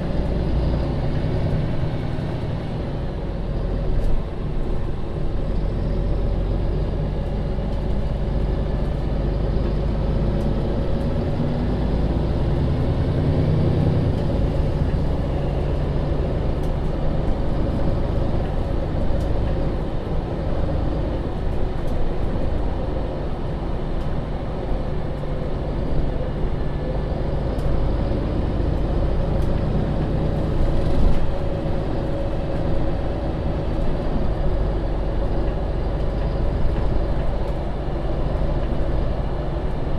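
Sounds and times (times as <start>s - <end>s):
bus diesel engine running: 0.0s - 39.9s
road noise: 0.0s - 39.9s.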